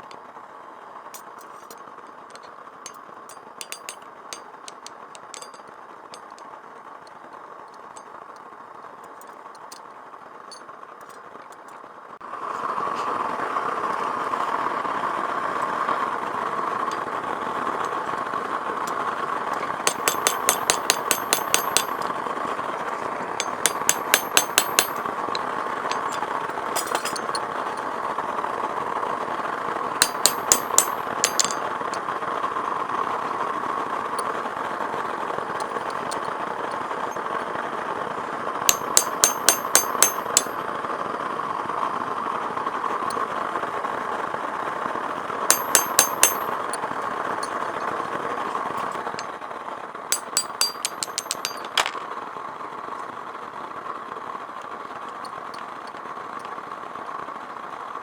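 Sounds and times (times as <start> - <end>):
hammer ringing on anvil: 2.3 - 4.0, 4.7 - 5.6, 19.8 - 22.1, 23.4 - 26.2, 26.8 - 27.4, 30.0 - 31.6, 38.7 - 40.6, 45.5 - 46.8, 50.2 - 52.0.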